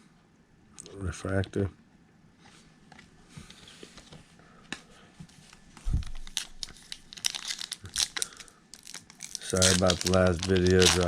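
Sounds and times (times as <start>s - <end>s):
foil wrapper tearing and crinkling: 6.0s - 11.0s.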